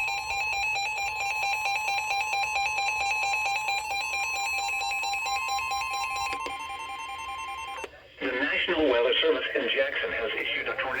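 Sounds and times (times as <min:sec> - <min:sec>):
rapid pulsing alarm beep: 0:00.0 - 0:07.8.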